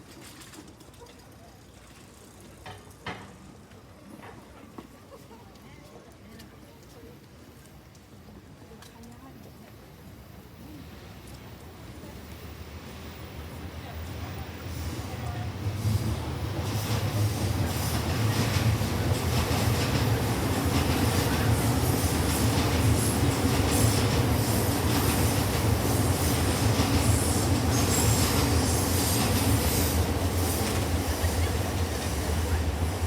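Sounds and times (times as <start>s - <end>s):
train wheels rumbling on rails: 10.9s - 33.0s.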